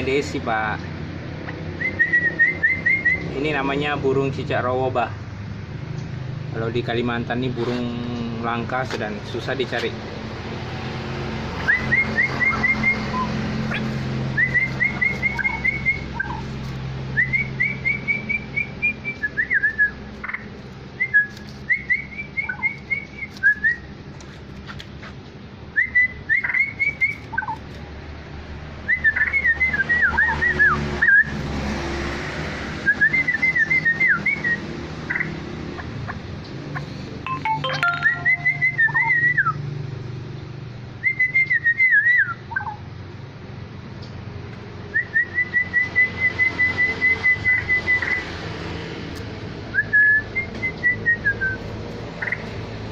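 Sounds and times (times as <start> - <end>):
bird singing whistled notes: 14.4 - 16.3, 37.4 - 39.6.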